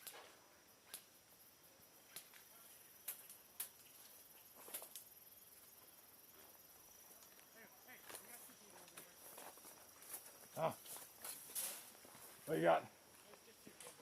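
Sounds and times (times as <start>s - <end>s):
faint clicks and snaps: 2.1s - 3.9s
faint hiss: 10.5s - 14.0s.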